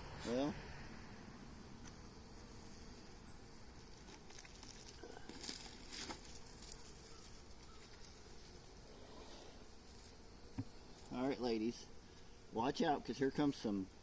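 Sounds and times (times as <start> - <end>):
honeybees buzzing: 0.0 - 14.0
rustling and scraping of handling: 3.8 - 11.5.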